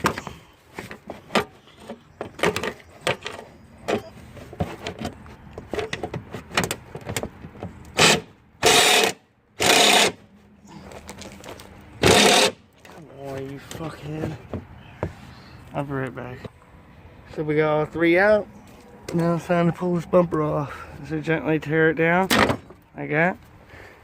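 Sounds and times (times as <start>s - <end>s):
loud rasping bursts: 7.9s - 10.2s, 12.0s - 12.6s.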